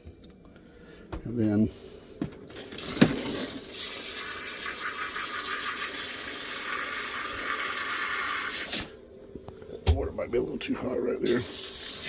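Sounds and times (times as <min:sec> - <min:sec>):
water running from hose into tub: 0:02.8 - 0:08.9, 0:11.2 - 0:12.0.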